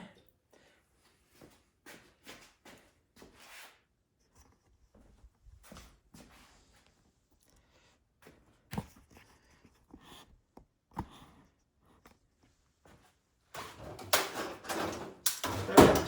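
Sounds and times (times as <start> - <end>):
rubbing and rattling: 13.6 - 16.0.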